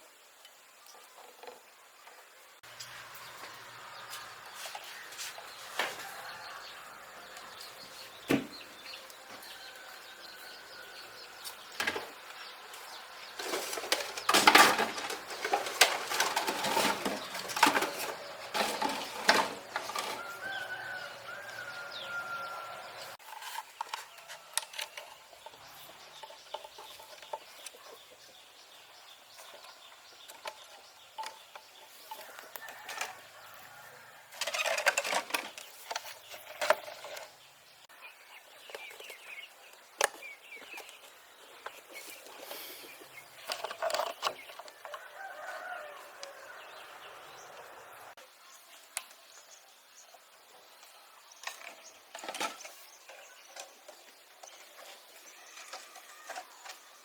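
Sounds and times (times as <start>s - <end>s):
rustling: 2.7s - 27.8s.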